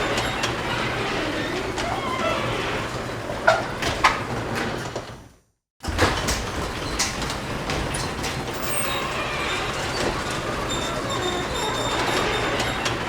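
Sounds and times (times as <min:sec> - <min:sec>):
metal squeals: 0:00.0 - 0:03.3, 0:08.0 - 0:13.0
garage door rumbling on track: 0:00.0 - 0:13.0.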